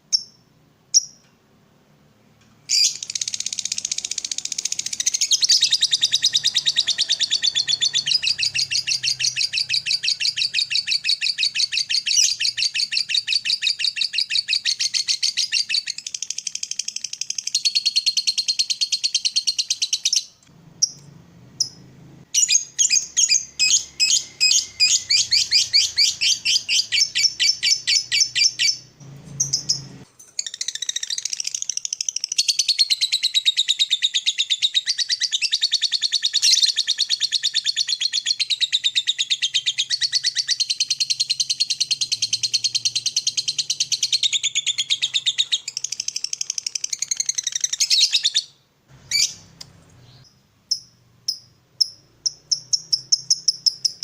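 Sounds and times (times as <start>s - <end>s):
lovebird chattering: 2.7s - 21.0s, 22.4s - 54.0s.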